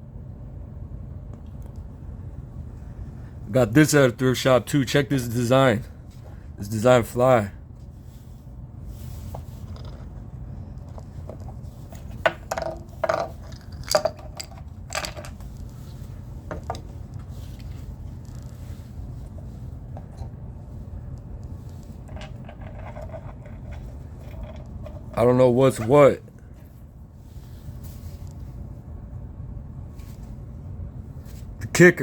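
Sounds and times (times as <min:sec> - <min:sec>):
steady low hum: 0:00.0 - 0:32.0
small hard objects clinking: 0:12.5 - 0:15.4.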